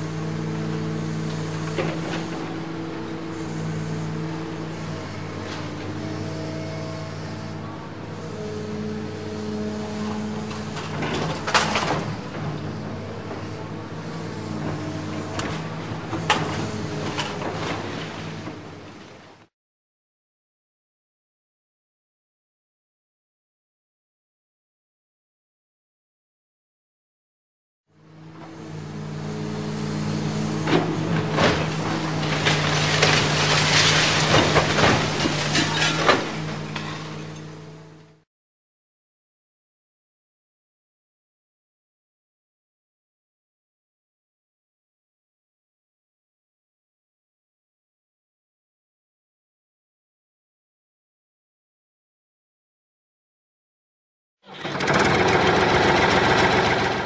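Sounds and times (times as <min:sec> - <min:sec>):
heavy engine running hum: 0:00.0 - 0:19.4, 0:27.9 - 0:38.2, 0:54.5 - 0:57.0
heavy vehicle engine running: 0:27.9 - 0:38.2, 0:54.5 - 0:57.0.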